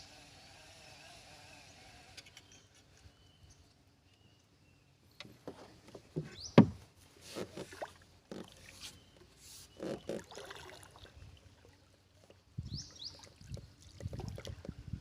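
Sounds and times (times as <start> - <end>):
wooden knocks against hull: 5.4 - 8.6
paddle splashing water: 5.4 - 15.0.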